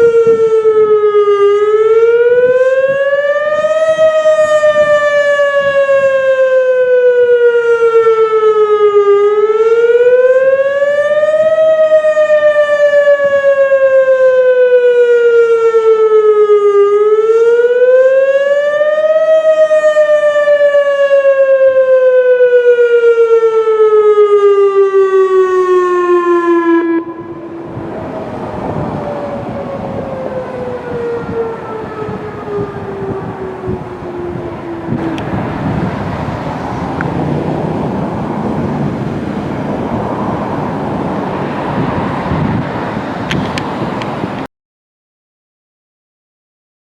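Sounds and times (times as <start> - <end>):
wind noise: 0.0 - 7.8, 26.9 - 44.5
warning siren wailing: 0.0 - 44.5.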